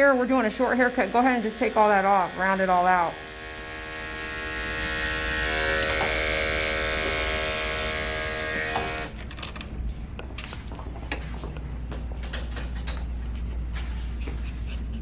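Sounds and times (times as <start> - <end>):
electric clipper buzzing: 0.0 - 9.2.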